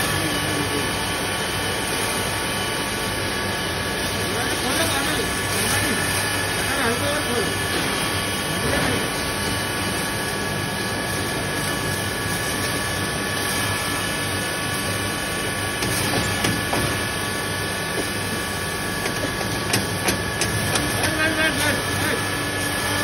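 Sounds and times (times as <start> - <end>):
electric grinder whining: 4.3 - 23.0.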